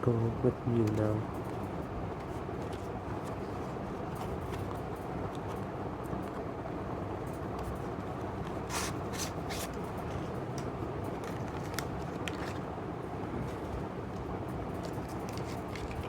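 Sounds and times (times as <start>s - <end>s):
low background noise: 0.0s - 16.0s
light clicks of packaging: 9.7s - 12.7s, 13.5s - 16.0s.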